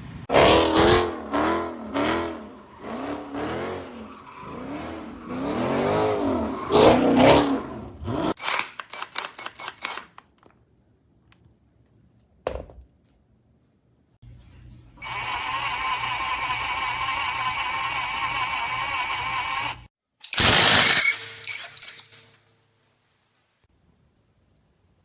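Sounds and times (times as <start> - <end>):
impact wrench whirring: 15.0 - 21.5.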